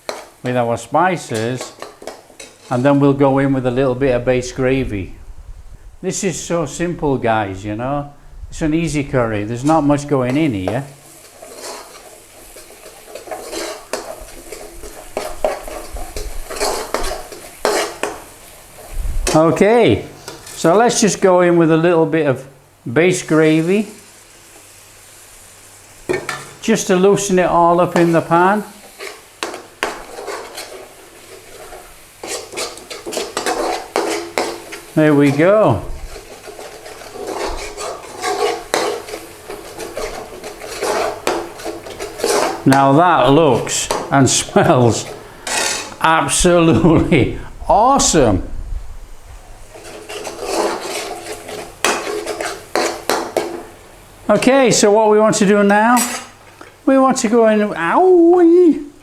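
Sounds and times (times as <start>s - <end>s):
utensil clanking against pan: 0.0s - 0.4s, 1.3s - 2.7s, 9.6s - 19.4s, 26.1s - 26.7s, 28.8s - 46.1s, 49.7s - 53.8s
metal utensil scraping thick paste: 0.0s - 0.6s, 1.2s - 3.2s, 8.9s - 21.3s, 26.1s - 48.3s, 49.7s - 53.8s.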